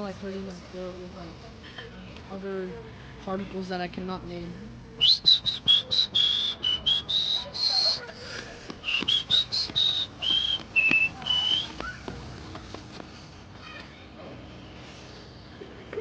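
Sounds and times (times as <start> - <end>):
person whistling a tune: 5.0 - 8.0, 8.8 - 11.8.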